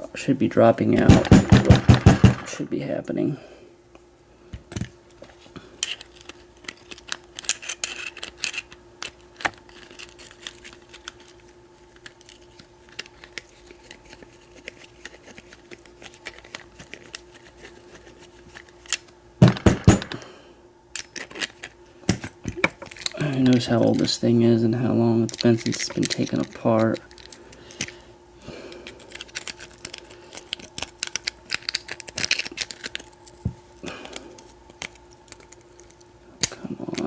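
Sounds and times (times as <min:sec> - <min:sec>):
faint steady hum: 0:00.0 - 0:37.0
loud knocks: 0:01.1 - 0:02.6, 0:19.4 - 0:20.2.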